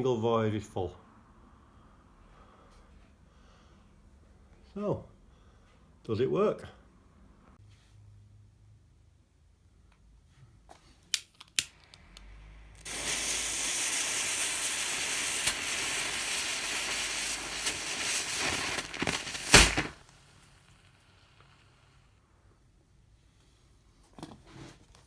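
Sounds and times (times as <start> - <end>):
match powder fizzing hiss: 11.9 - 22.1
sharp pop: 12.8 - 20.1.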